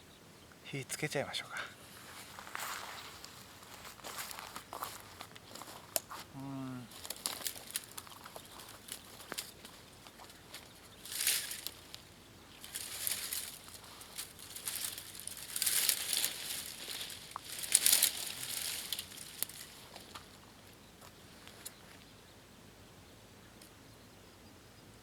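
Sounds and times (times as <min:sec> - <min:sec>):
dry material crinkling: 0:03.2 - 0:21.7.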